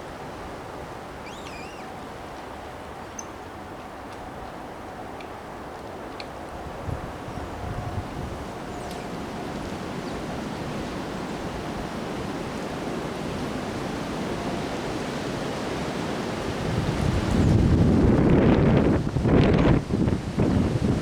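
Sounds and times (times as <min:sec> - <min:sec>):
wind buffeting microphone: 0:06.4 - 0:21.0
strong wind rushing: 0:06.6 - 0:21.0.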